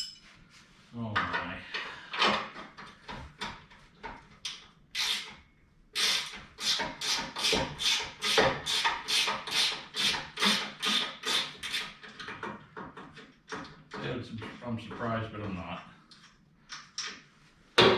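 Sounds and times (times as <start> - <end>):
ratchet wrench rasping strokes: 5.0 - 5.4, 6.0 - 11.9.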